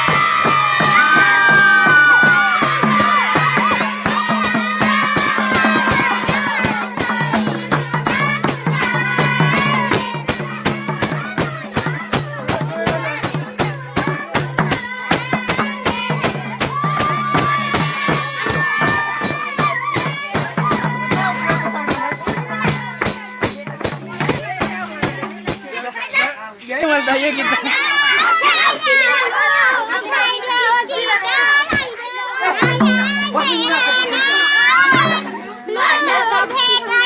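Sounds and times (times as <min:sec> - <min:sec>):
rattling percussion: 0:00.0 - 0:26.4, 0:31.7 - 0:36.0.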